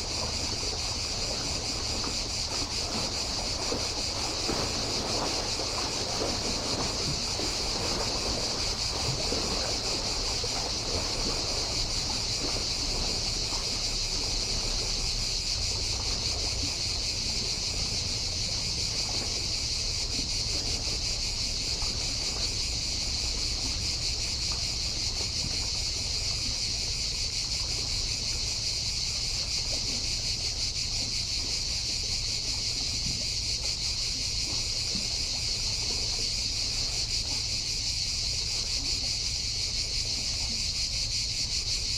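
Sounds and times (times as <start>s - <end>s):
waves washing on shore: 0.0s - 26.0s
cicadas buzzing: 0.0s - 41.9s.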